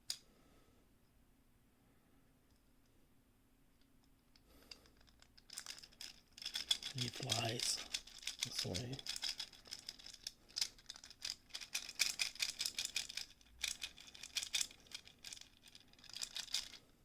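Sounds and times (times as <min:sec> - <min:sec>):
plastic toy clicks and rattles: 0:04.9 - 0:16.8.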